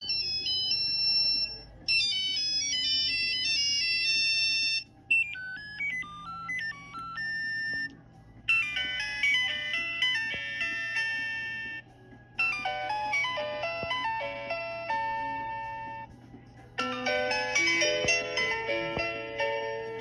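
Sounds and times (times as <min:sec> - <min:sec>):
phone ringtones: 0:00.0 - 0:07.9, 0:08.5 - 0:11.8, 0:12.4 - 0:16.1.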